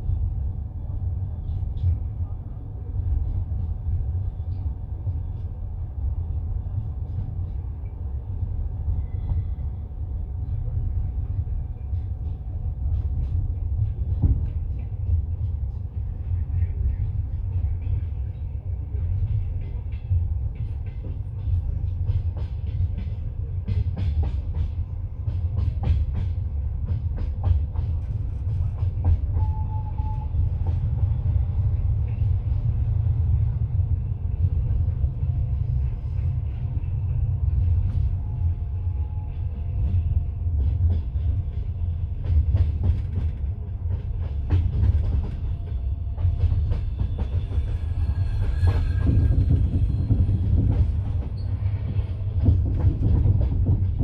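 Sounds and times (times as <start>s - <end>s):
low train rumble: 0.0s - 54.0s
train wheels clacking over joints: 18.9s - 31.1s, 39.3s - 54.0s.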